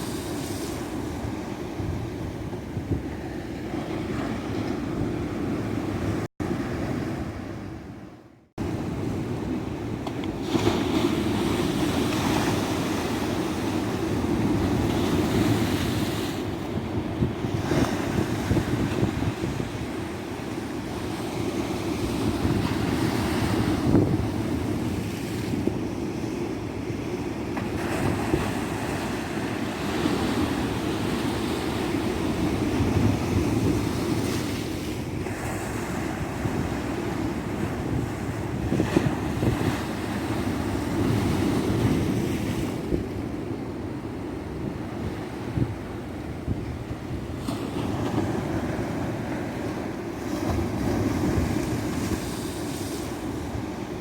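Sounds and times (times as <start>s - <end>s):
ocean surf breaking: 0.0s - 7.8s.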